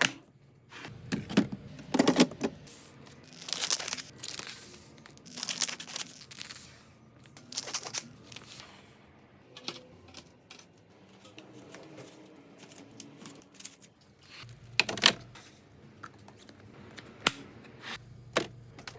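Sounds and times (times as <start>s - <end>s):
items clinking and knocking: 0.8s - 8.8s, 9.5s - 15.4s
plastic packaging rustling: 3.0s - 8.8s, 9.6s - 14.2s.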